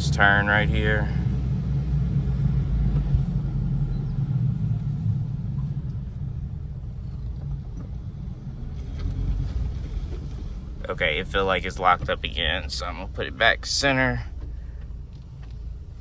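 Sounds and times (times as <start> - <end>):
truck engine low rumble: 0.0 - 16.0
drivetrain binding: 3.9 - 16.0.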